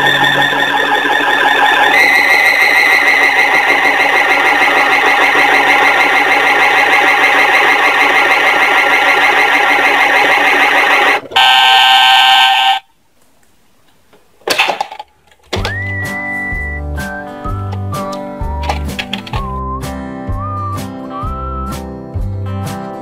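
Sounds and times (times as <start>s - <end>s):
electronic beep tone: 0.0s - 11.2s
warbling electronic hum: 0.0s - 11.3s.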